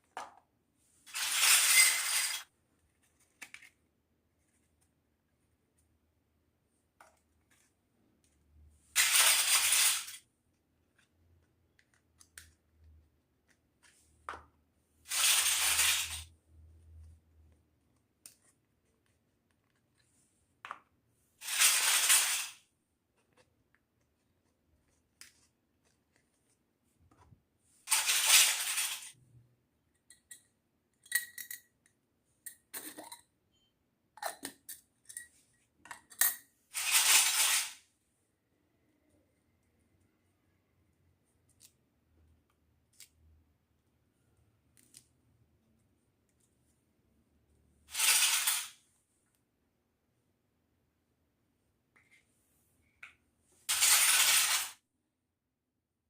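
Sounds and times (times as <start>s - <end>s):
toy pieces clicking and clinking: 1.1s - 2.5s, 9.0s - 10.2s, 15.1s - 16.3s, 21.4s - 22.6s, 27.9s - 29.2s, 30.1s - 31.8s, 36.0s - 37.8s, 47.9s - 48.8s, 53.7s - 54.8s.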